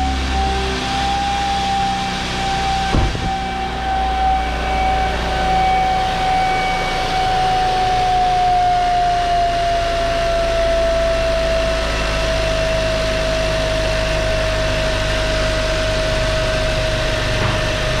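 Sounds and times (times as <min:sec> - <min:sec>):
turbo whining whistle: 0:00.0 - 0:18.0
car engine running: 0:02.8 - 0:03.8.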